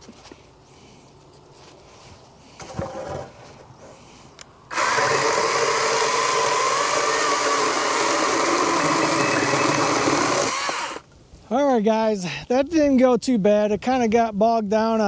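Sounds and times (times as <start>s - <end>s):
electric chainsaw whining: 4.7s - 11.0s.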